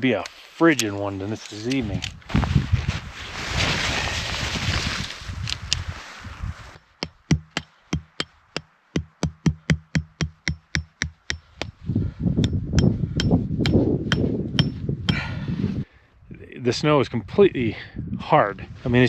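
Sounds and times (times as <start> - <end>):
wind noise on microphone: 1.7 - 6.8, 11.4 - 19.0
stake hammered into frozen snow: 7.0 - 11.7.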